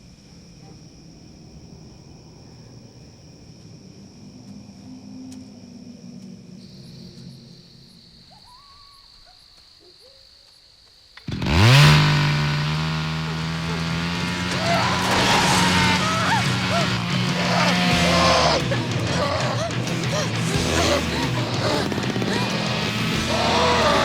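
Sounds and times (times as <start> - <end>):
insects chirping: 0.0 - 24.0
chainsaw revving: 11.2 - 24.0.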